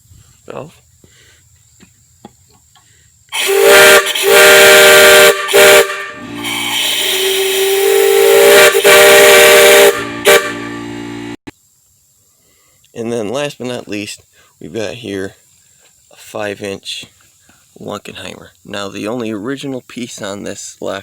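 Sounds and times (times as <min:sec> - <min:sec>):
rushing air hiss: 0:03.3 - 0:11.4
steam whistle chord blasts: 0:03.4 - 0:11.4.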